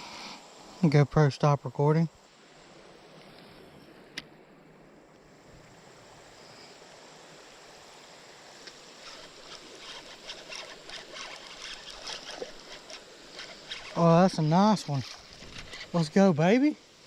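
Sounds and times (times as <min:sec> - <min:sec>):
creek water running: 0:00.0 - 0:17.0
sharp ticks and splashy clicks: 0:08.6 - 0:16.0.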